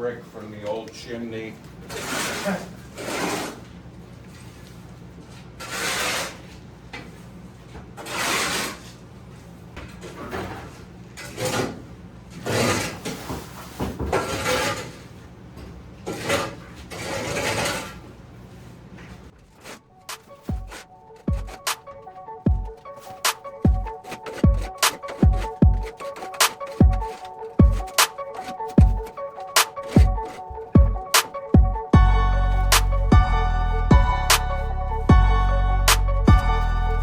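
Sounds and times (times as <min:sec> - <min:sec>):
rubble scraping and rattling: 0:10.0 - 0:15.3, 0:16.0 - 0:18.2, 0:19.0 - 0:37.0.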